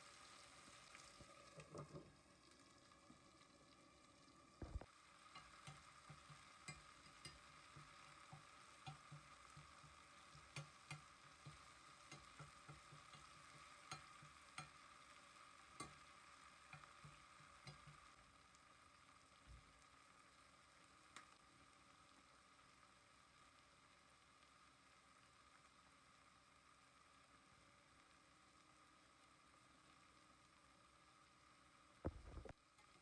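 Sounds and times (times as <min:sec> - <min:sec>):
food sizzling in a pan: 0:00.0 - 0:33.0
utensil clicks and taps: 0:04.6 - 0:14.8, 0:16.7 - 0:18.0.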